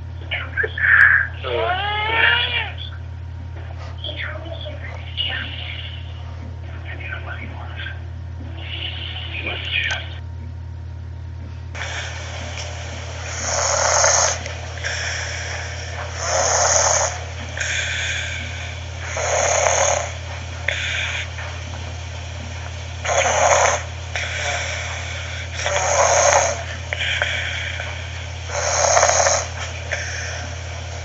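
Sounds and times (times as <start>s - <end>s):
steady low hum: 0.0s - 31.0s
person snoring: 8.5s - 10.2s, 11.8s - 21.8s, 22.6s - 31.0s
soft breath: 11.8s - 31.0s.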